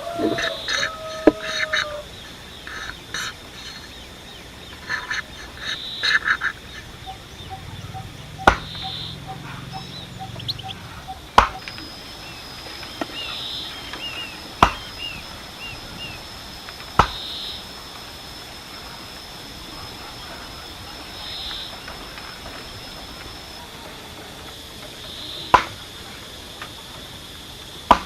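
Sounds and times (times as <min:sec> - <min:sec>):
poultry and birds calling: 0:00.0 - 0:28.0
sharp knocks: 0:07.0 - 0:09.4, 0:11.3 - 0:11.8, 0:14.6 - 0:15.0, 0:16.9 - 0:17.3.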